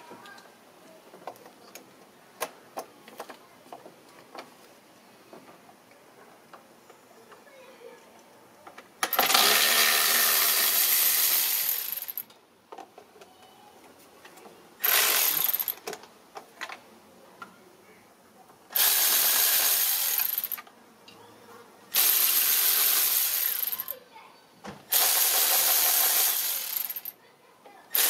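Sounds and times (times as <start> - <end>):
ratchet clicking: 9.0 - 12.3, 14.8 - 15.9, 18.7 - 20.6, 21.9 - 24.0, 24.9 - 27.2.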